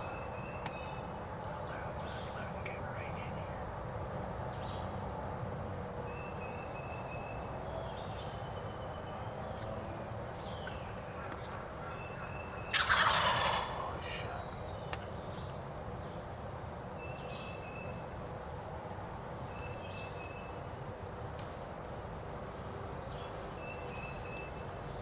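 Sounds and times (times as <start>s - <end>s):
turkey gobbling: 11.2s - 14.4s.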